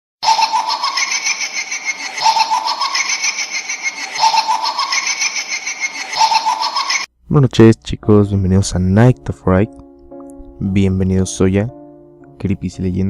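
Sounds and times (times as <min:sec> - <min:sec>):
looped pulsing laughter: 0:00.2 - 0:07.1.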